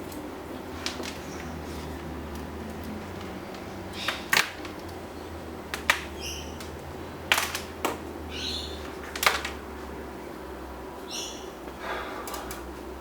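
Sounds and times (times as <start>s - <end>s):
steady low hum: 0.0s - 13.0s
sharp clicks and knocks: 5.7s - 8.1s, 8.9s - 9.6s.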